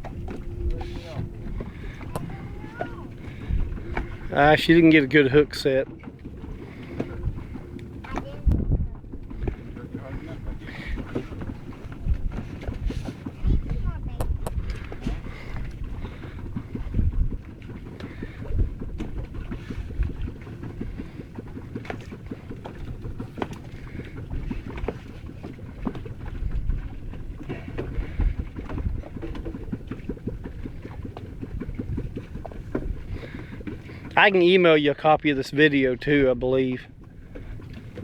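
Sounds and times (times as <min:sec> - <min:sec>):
wind rumbling on microphone: 0:00.0 - 0:38.0.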